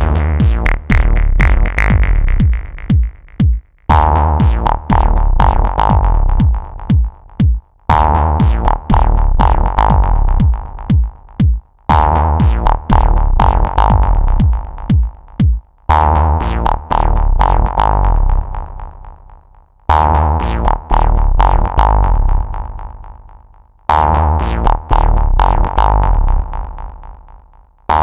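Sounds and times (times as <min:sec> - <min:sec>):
drum machine beat: 0:00.0 - 0:17.8.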